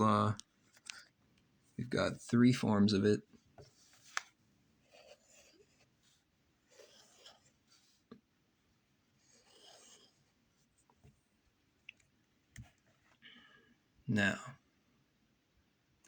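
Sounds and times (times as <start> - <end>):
pen scratching handwriting: 4.0 - 6.0, 6.7 - 7.6, 9.3 - 10.2.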